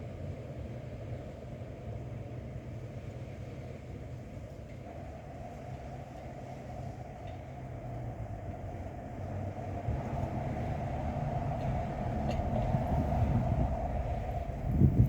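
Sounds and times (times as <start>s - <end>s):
wind buffeting microphone: 4.9s - 15.0s.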